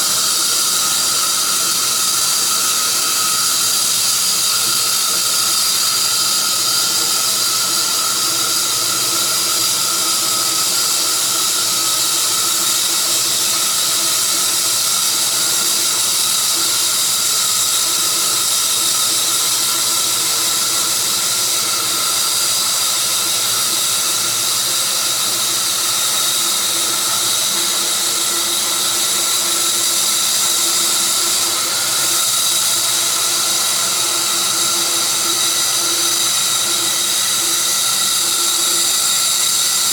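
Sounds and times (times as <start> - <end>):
sawmill cutting log: 0.0 - 39.9.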